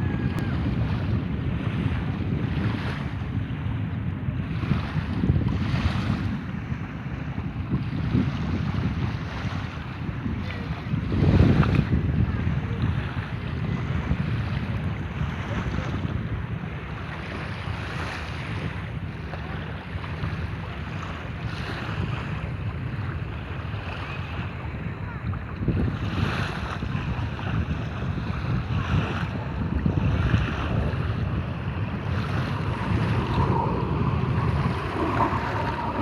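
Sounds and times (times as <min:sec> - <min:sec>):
sea waves breaking: 0:00.0 - 0:03.6, 0:25.1 - 0:36.0
wind buffeting microphone: 0:00.0 - 0:36.0
low rumble: 0:29.6 - 0:36.0.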